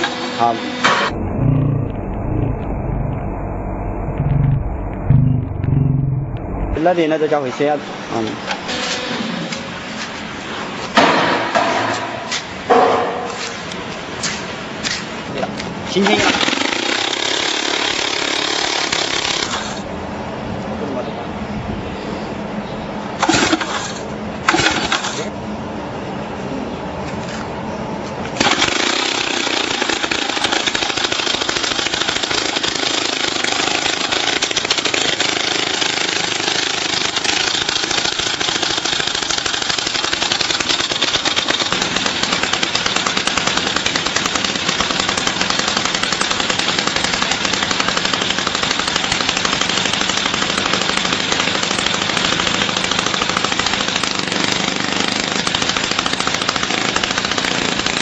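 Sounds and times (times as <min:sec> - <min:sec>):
rock drill hammering: 0:16.0 - 0:19.9, 0:28.4 - 0:58.0.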